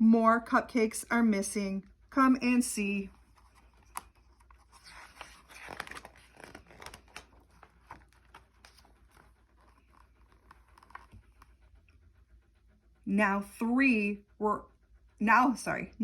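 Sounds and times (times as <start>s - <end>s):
book pages turning: 3.2s - 11.4s.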